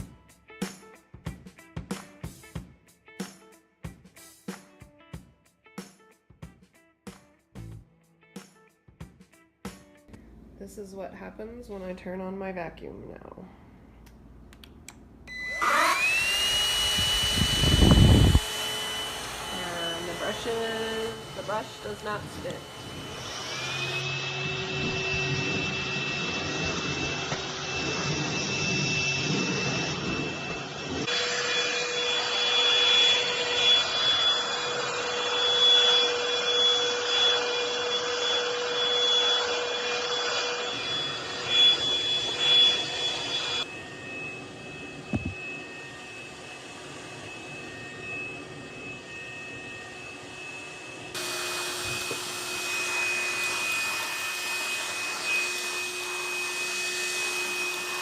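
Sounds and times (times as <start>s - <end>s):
stick vacuum motor whine: 15.3s - 58.0s.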